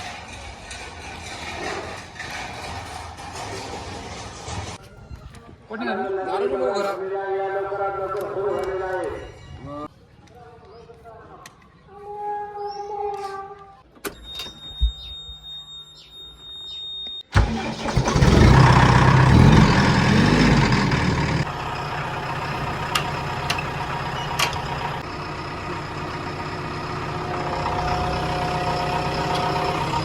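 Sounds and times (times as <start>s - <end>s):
vehicle engine starting and idling: 17.3s - 30.0s.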